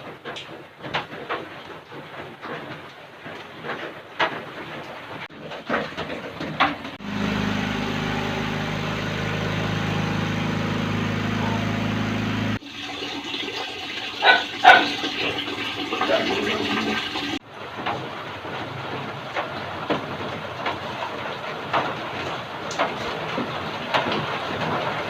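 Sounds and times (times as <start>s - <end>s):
sharp knocks and clattering: 0.0s - 7.1s, 17.6s - 25.0s
water running: 6.9s - 17.4s
low hum: 7.0s - 12.6s.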